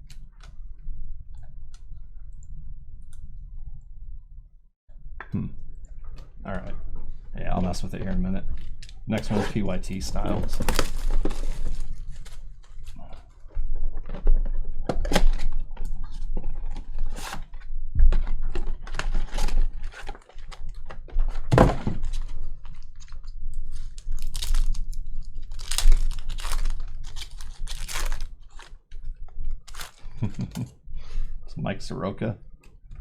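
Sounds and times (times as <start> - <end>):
card packs being opened: 7.6 - 13.3, 14.9 - 30.7.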